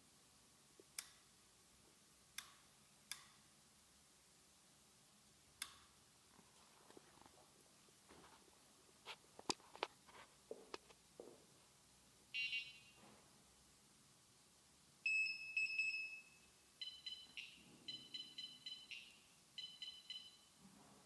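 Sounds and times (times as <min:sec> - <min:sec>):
wheelchair controller beeps: 0:15.1 - 0:20.6.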